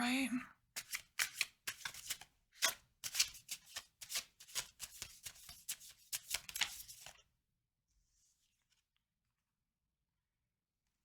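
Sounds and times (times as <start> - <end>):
cards being shuffled: 0.8 - 7.2.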